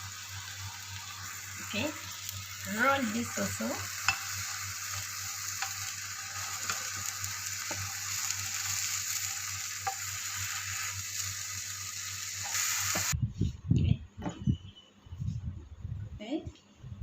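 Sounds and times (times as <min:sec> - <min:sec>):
pancake sizzling on hot pan: 0:00.0 - 0:13.2.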